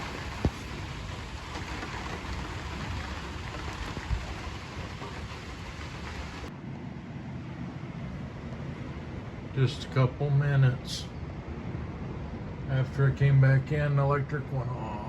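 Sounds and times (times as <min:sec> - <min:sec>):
steady rain falling: 0:00.0 - 0:06.5.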